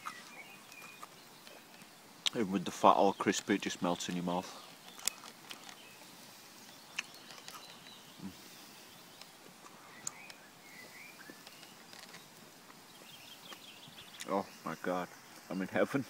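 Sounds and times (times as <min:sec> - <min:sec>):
bird chirps: 0:00.0 - 0:15.8
sharp clicks and pops: 0:03.3 - 0:05.9, 0:09.2 - 0:10.4.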